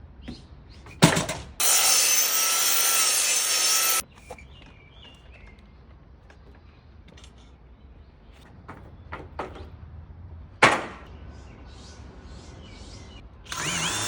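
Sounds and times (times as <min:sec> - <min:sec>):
power tool cutting: 0:01.6 - 0:04.0, 0:13.5 - 0:14.0.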